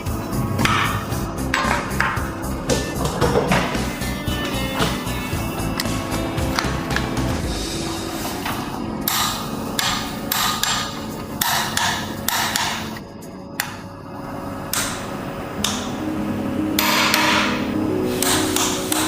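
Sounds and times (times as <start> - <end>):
hand tools knocking on metal: 0.6 - 5.2.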